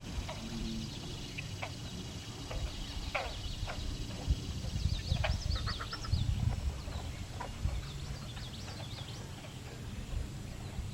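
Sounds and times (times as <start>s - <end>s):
bittern guttural clucking: 5.0s - 6.7s.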